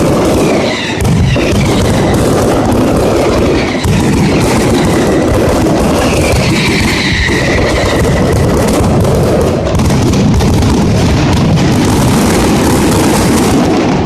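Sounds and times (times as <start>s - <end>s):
firecracker bangs: 0.0s - 14.0s.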